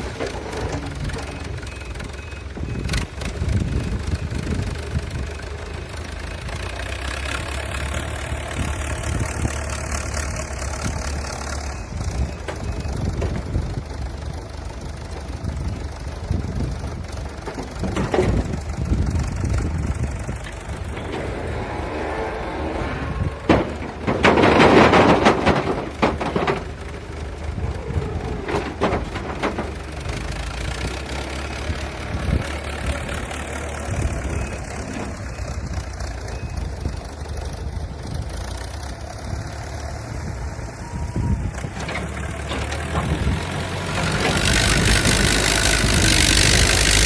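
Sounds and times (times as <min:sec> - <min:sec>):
heavy machinery diesel engine: 0:00.0 - 0:47.0.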